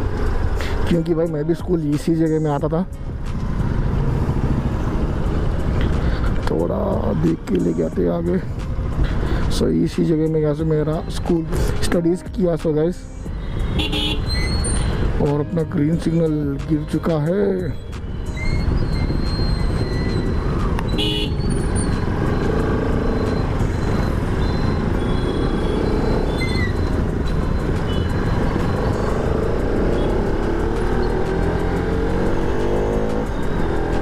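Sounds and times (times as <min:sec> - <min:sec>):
motorcycle engine accelerating: 0:03.4 - 0:05.8, 0:18.6 - 0:34.0
car horn toots: 0:13.8 - 0:14.4, 0:20.9 - 0:21.6.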